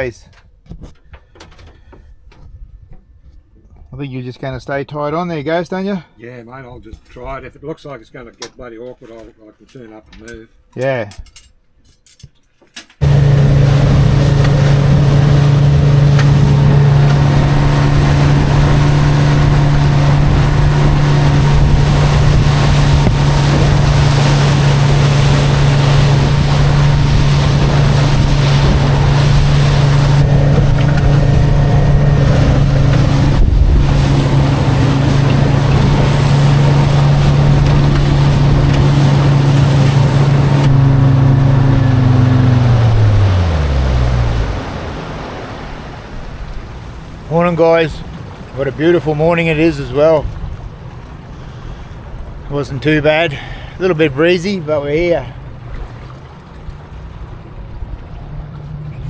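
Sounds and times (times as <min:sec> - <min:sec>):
outboard motor running: 0:13.0 - 0:59.0
wind and water rushing: 0:13.0 - 0:59.0.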